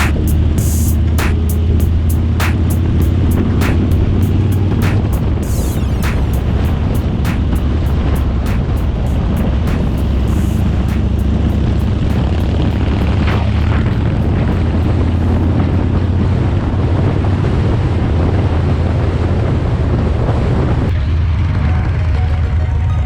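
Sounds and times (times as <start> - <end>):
motorcycle engine running: 0.0 - 18.0
wind rushing over microphone: 0.0 - 21.6.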